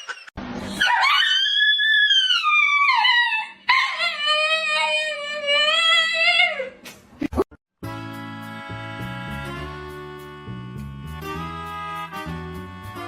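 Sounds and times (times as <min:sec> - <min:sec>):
dog howling: 0:00.8 - 0:06.7.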